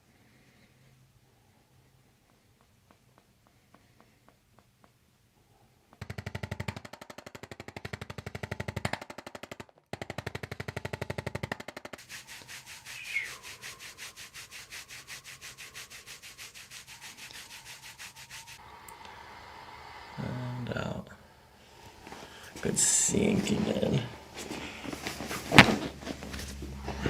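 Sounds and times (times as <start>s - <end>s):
massage tool rattling: 2.0s - 5.3s, 5.9s - 18.6s.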